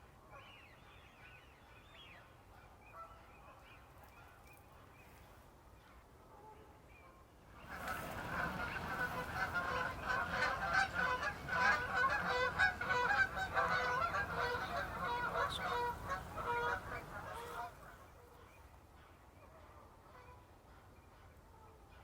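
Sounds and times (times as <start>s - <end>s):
geese honking: 7.6s - 18.0s.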